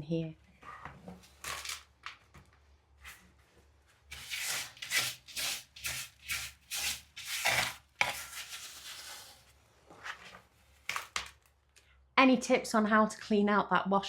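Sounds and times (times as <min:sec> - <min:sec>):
rough scraping strokes: 0:04.1 - 0:10.4.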